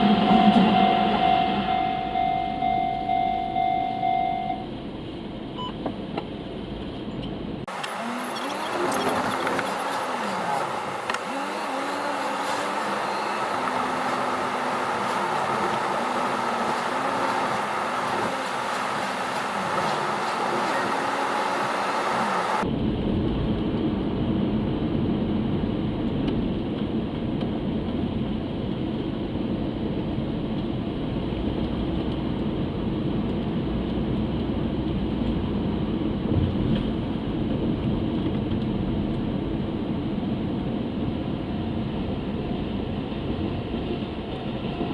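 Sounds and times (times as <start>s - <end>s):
vehicle and train running noise: 0.0s - 44.9s
deep muffled rumble: 6.7s - 44.9s
wavering hum: 7.7s - 22.6s.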